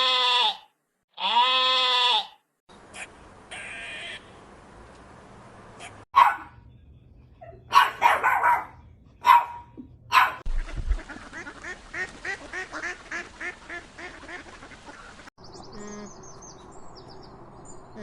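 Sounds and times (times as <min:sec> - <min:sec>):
dog barking: 0:05.8 - 0:06.6, 0:07.4 - 0:10.5
ducks quacking: 0:10.2 - 0:15.3.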